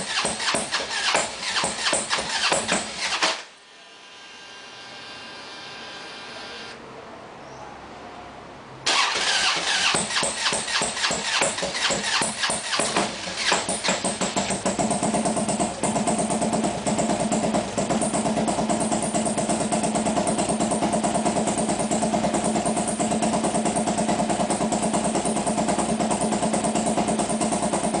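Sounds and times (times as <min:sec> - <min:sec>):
motorcycle engine idling: 0:00.0 - 0:03.2, 0:08.9 - 0:28.0.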